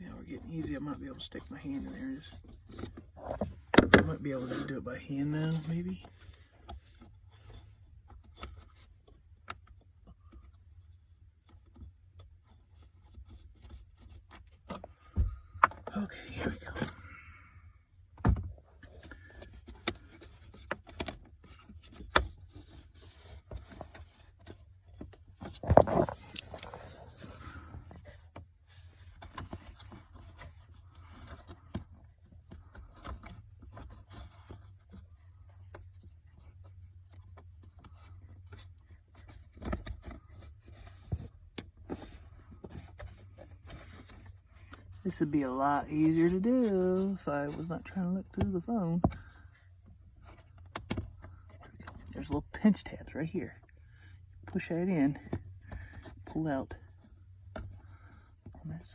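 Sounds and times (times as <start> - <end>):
plastic parts clattering: 25.4 - 27.6.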